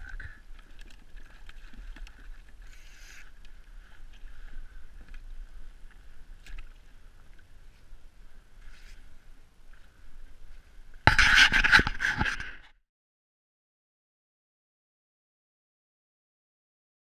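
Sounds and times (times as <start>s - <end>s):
water sloshing against kayak hull: 0.2s - 12.6s.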